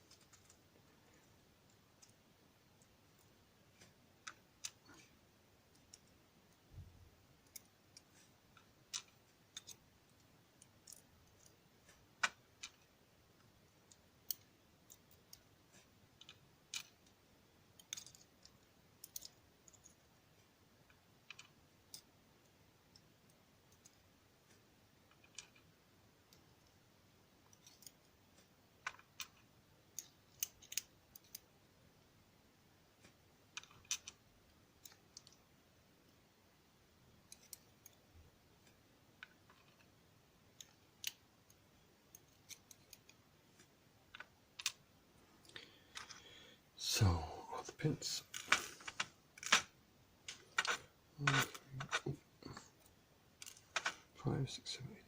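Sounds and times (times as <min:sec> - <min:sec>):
small metal parts clicking: 0:07.4 - 0:11.5, 0:17.8 - 0:20.0, 0:25.1 - 0:25.7, 0:27.4 - 0:28.0, 0:28.8 - 0:31.4, 0:33.6 - 0:34.2, 0:34.8 - 0:35.4, 0:37.2 - 0:38.0, 0:50.3 - 0:54.0.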